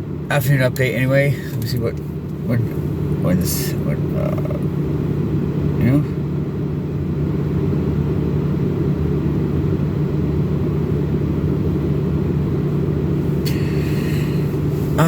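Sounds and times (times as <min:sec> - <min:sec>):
air conditioning hum: 0:00.0 - 0:15.0
car engine idling: 0:00.0 - 0:15.0.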